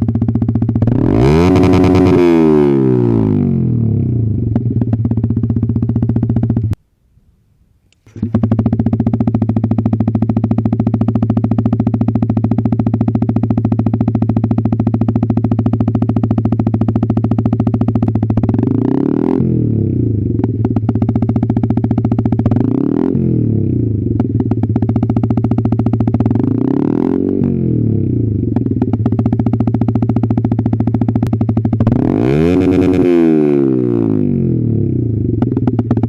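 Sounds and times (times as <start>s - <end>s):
motorcycle engine idling: 0.0s - 6.8s, 8.1s - 33.1s, 34.0s - 36.0s.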